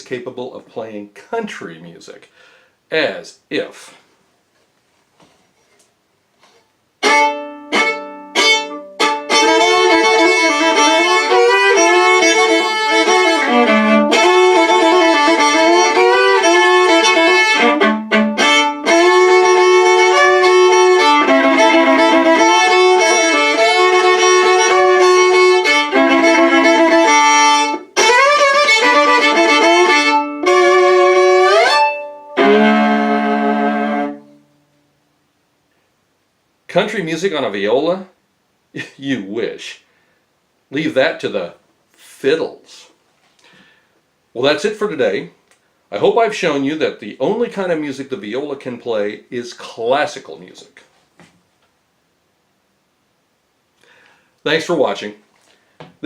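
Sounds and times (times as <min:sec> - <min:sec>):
viola playing fiddle-style tune: 0:07.0 - 0:34.4.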